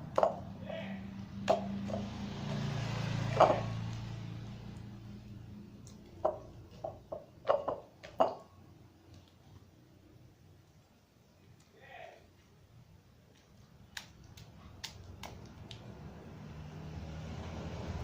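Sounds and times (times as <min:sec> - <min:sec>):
sticky smacks and squelches: 0:13.3 - 0:16.0.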